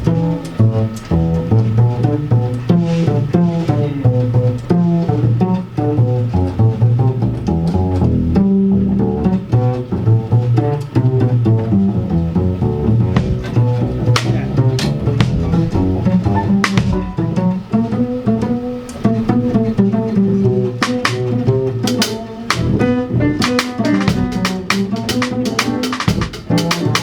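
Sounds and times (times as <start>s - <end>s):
instrumental music with low notes: 0.0s - 27.0s
sharp percussive hits: 13.2s - 17.4s, 20.8s - 27.0s.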